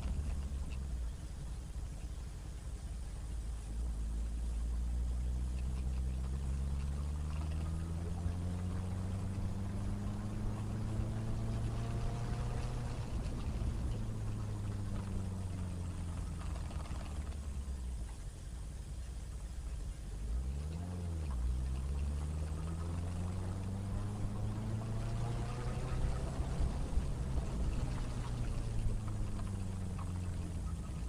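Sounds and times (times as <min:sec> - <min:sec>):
motorcycle engine accelerating: 0:00.0 - 0:18.3, 0:19.6 - 0:31.0
wind on microphone: 0:07.5 - 0:17.8, 0:22.6 - 0:31.0.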